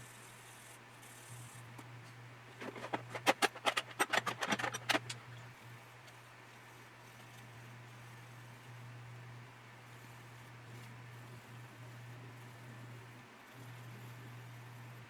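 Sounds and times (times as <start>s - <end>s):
small hard items clattering: 2.5s - 5.2s.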